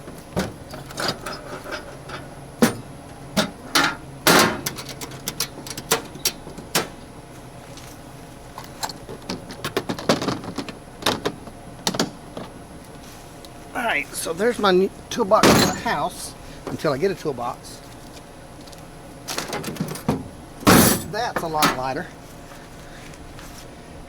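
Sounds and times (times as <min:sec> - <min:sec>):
metal tools clinking in toolbox: 0:15.4 - 0:16.1.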